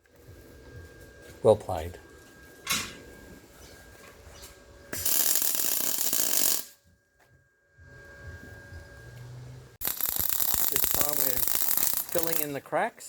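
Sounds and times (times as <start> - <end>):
welder arc crackling: 4.9 - 6.8, 9.8 - 12.8.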